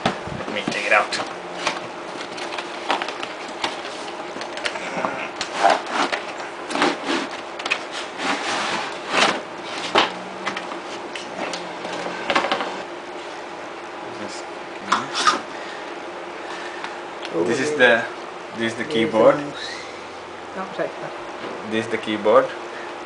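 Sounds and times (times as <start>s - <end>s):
packaging being handled and opened: 1.6s - 11.3s.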